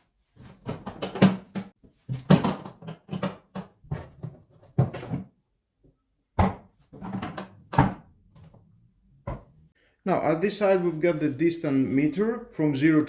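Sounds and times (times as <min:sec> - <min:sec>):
plastic toolbox clicks and knocks: 0:00.4 - 0:05.3.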